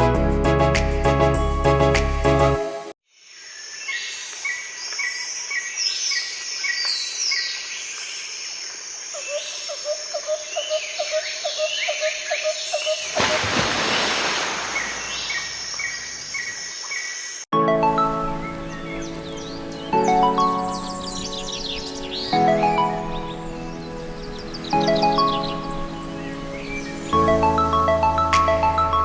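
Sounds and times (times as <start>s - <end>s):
music: 0.0s - 3.0s, 17.6s - 29.0s
birds calling and chirping: 9.2s - 17.4s.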